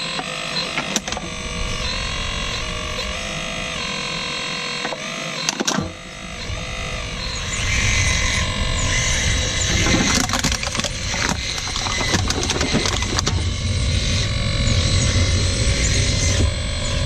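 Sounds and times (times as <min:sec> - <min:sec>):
electric motors whining: 0:00.0 - 0:17.0
sharp clicks: 0:00.1 - 0:01.4, 0:09.7 - 0:13.4.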